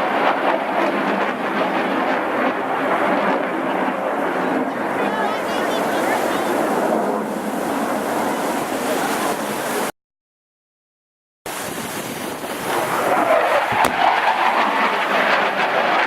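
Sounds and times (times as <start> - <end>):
jet engines flying past: 0.0 - 9.9, 11.5 - 16.0.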